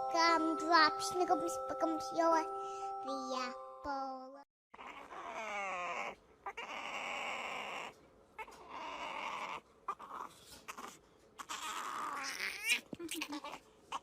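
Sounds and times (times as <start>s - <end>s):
pet animal crying out: 4.8s - 14.0s.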